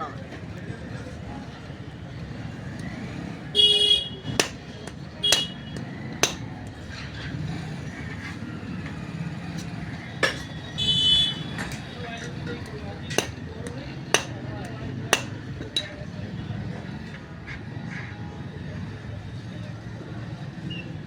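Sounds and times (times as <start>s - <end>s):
street noise: 0.0s - 21.0s
vehicle horn honks: 3.6s - 4.3s, 10.8s - 11.6s
tools knocking on metal: 4.4s - 6.5s, 10.2s - 10.6s, 13.2s - 15.9s.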